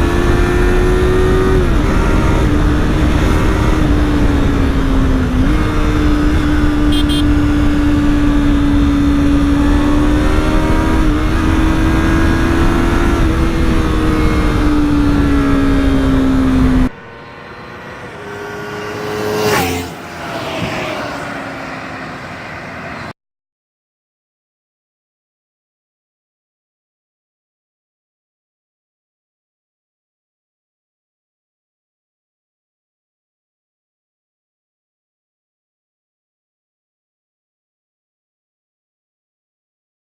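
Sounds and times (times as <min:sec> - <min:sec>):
motorcycle engine running high revs: 0:00.0 - 0:23.1
wind rumble: 0:00.0 - 0:23.1
motorcycle passing by: 0:00.0 - 0:23.2.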